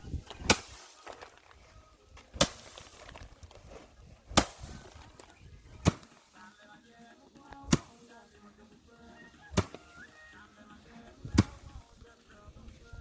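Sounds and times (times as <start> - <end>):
sharp chopping strikes: 0.4 - 1.0, 2.3 - 2.8, 4.3 - 4.8, 5.8 - 6.2, 7.7 - 8.0, 9.6 - 9.8.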